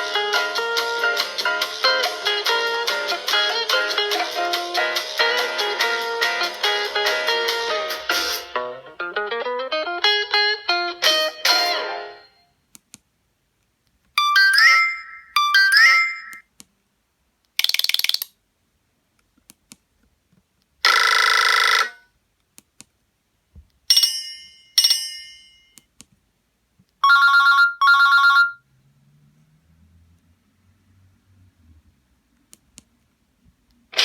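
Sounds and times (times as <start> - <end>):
ringing chimes: 14.2 - 16.4
rising phone chimes: 14.2 - 16.4, 27.0 - 28.6.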